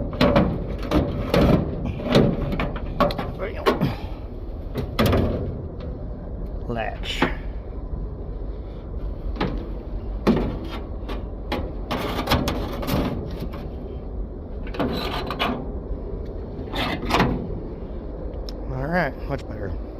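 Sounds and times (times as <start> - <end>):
rusty hinge creaking and grinding: 0.0 - 6.0, 9.3 - 15.8, 16.6 - 17.5.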